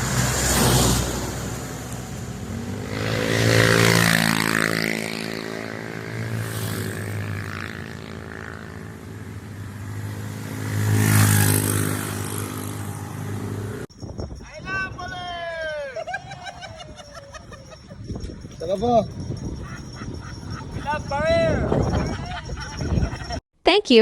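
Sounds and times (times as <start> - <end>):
vehicles passing on a road: 0.0 - 13.9, 15.7 - 23.4.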